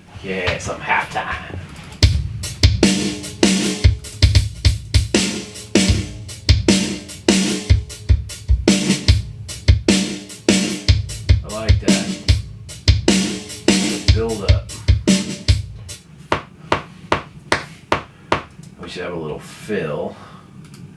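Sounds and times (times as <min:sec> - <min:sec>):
held pitched notes: 0:02.0 - 0:16.0
programmed drum beat: 0:02.0 - 0:17.4.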